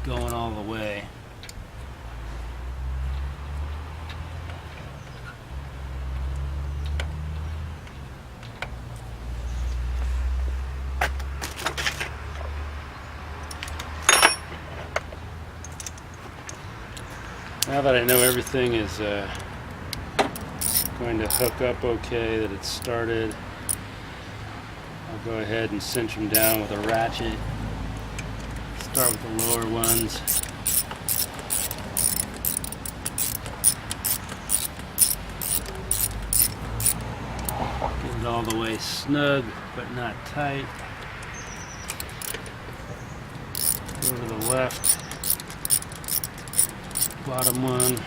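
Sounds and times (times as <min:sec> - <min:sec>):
metal tools clinking: 0:13.5 - 0:14.6, 0:18.0 - 0:18.7, 0:20.3 - 0:21.6, 0:25.9 - 0:27.0, 0:28.8 - 0:37.6, 0:41.8 - 0:42.6, 0:43.5 - 0:48.0
hand ratchet clicking: 0:18.1 - 0:18.6, 0:20.3 - 0:21.6, 0:22.8 - 0:23.8, 0:25.9 - 0:26.7, 0:28.8 - 0:37.6, 0:41.1 - 0:42.6, 0:43.5 - 0:48.0.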